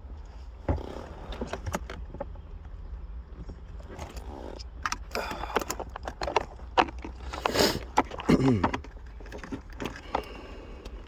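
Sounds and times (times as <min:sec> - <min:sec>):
plastic parts and tools rattling: 0:03.9 - 0:11.0.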